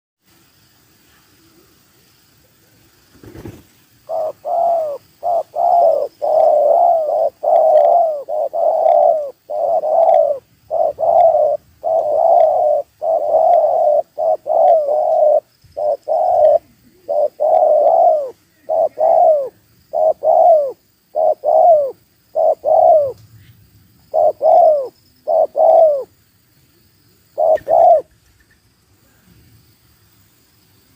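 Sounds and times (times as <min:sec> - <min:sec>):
dove cooing: 0:04.0 - 0:23.2, 0:24.1 - 0:26.1, 0:27.4 - 0:28.1.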